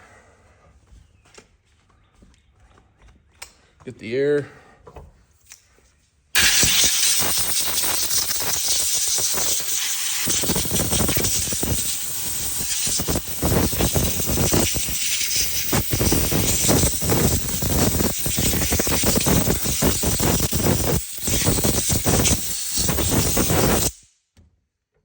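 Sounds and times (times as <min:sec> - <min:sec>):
compressed air hissing from blow gun: 0:06.4 - 0:24.1.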